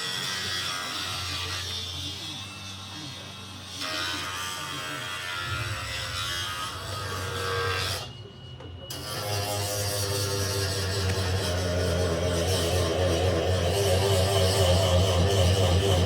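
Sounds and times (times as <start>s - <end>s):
arc welding buzzing crackle: 3.6s - 8.1s, 8.9s - 16.0s.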